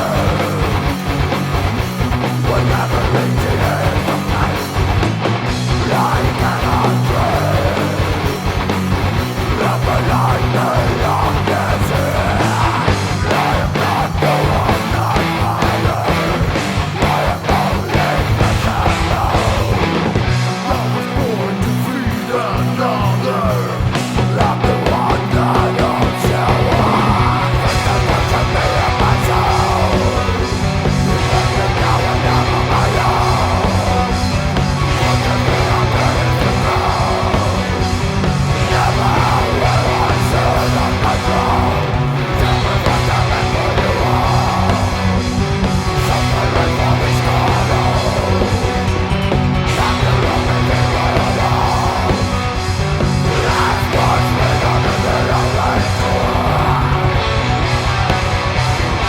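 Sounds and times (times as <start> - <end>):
heavy metal band playing: 0.0 - 59.0
wavering lead guitar: 0.0 - 59.0.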